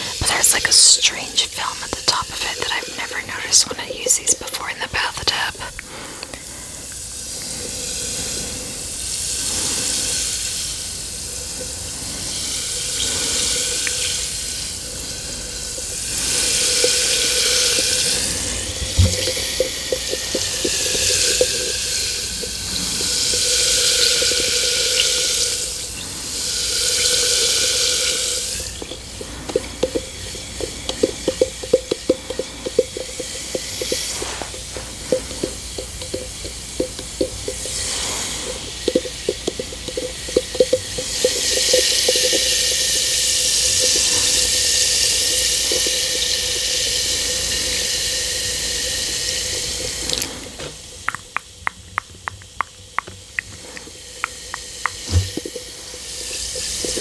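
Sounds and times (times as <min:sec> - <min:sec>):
bath bomb fizzing in water: 0:00.0 - 0:57.0
crackling pops: 0:51.0 - 0:55.6.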